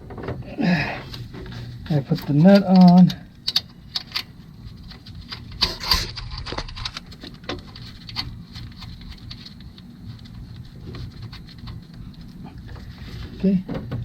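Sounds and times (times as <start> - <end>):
low steady hum: 0.0 - 14.0
tools clicking and tapping: 2.2 - 4.3.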